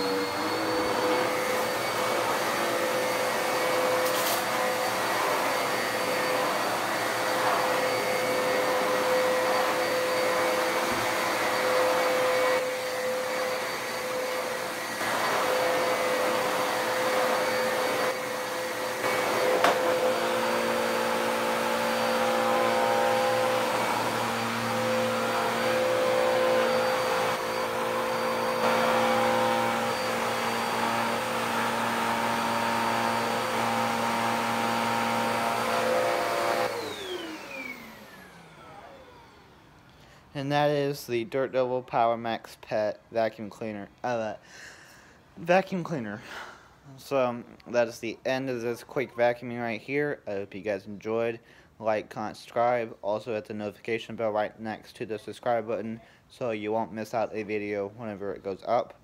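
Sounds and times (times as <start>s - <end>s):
upright vacuum cleaner running: 0.0s - 39.6s.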